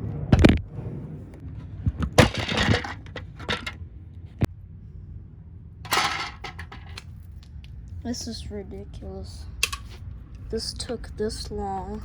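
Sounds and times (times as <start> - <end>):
plastic parts clattering: 2.2 - 3.8, 5.9 - 7.0
sharp plastic click: 9.6 - 9.9.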